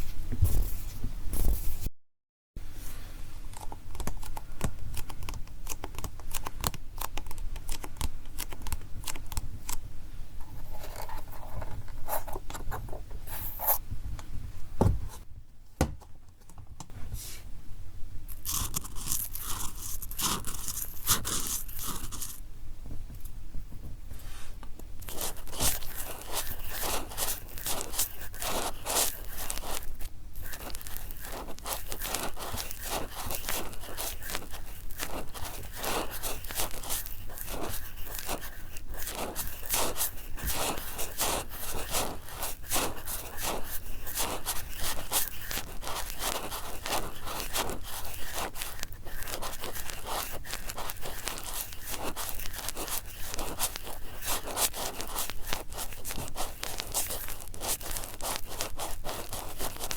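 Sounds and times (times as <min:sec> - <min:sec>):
cotton swabs scratching microphone: 0:18.3 - 0:22.4, 0:25.0 - 0:59.9.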